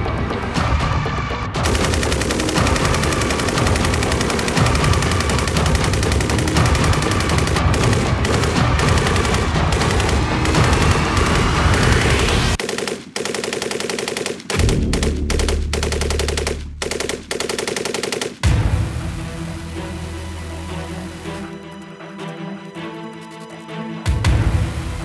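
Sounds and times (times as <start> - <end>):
machine gun automatic fire: 1.6 - 18.5.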